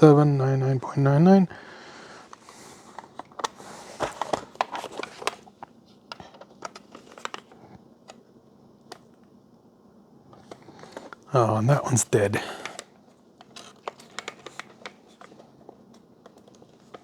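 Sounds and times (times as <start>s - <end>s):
soft hiss: 10.6s - 13.2s.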